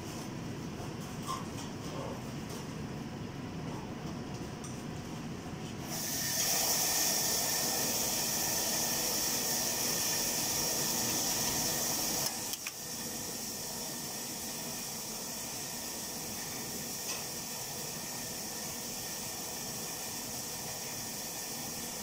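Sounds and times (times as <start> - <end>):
food sizzling in a pan: 5.9 - 12.2.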